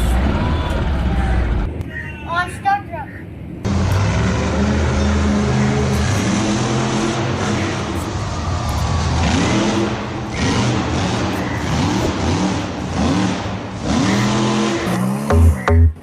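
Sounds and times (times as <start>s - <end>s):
engine revving: 3.7s - 16.0s.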